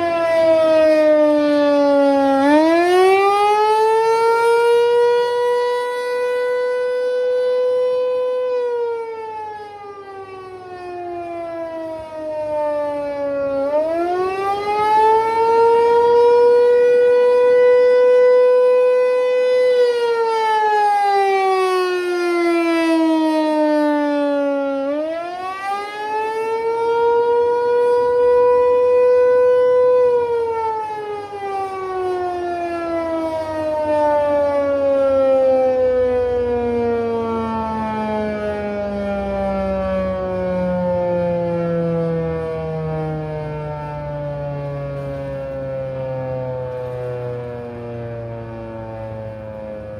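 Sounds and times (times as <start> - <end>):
warning siren wailing: 0.0 - 49.9.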